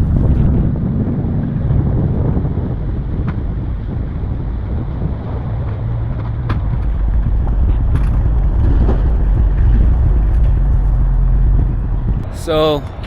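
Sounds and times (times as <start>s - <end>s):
low engine rumble: 0.0s - 13.0s
road or water noise: 0.0s - 13.0s
wind noise: 0.0s - 13.0s.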